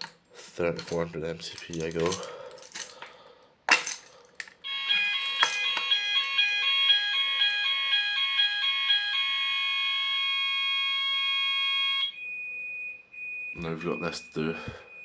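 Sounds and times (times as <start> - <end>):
electronic fire alarm tone: 4.6 - 15.0.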